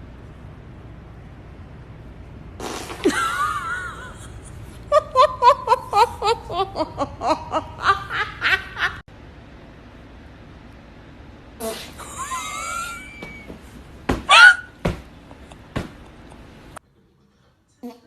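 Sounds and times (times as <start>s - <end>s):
high-pitched voice laughing: 3.0s - 9.0s, 12.0s - 13.5s.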